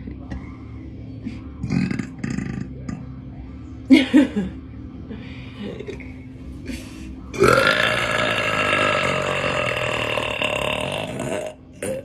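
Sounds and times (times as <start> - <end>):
woman burping: 7.4 - 12.0.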